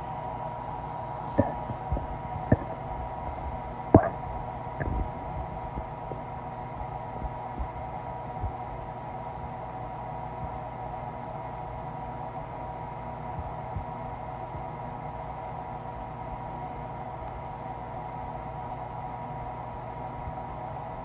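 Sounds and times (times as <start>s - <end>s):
steady hum: 0.0s - 14.3s
stomach gurgling: 1.2s - 5.9s
stomach rumble: 1.2s - 6.4s.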